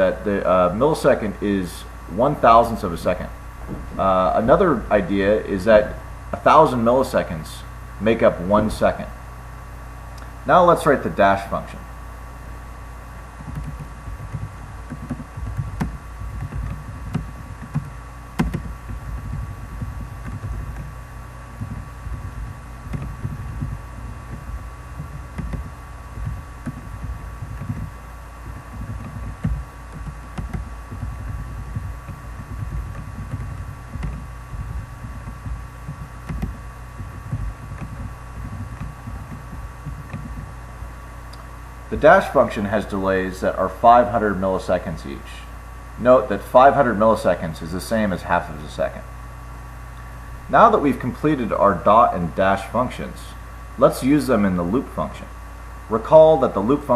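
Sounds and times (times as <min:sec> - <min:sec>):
electrical hum: 0:00.0 - 0:56.9
keyboard typing: 0:13.4 - 0:20.9, 0:28.5 - 0:40.5.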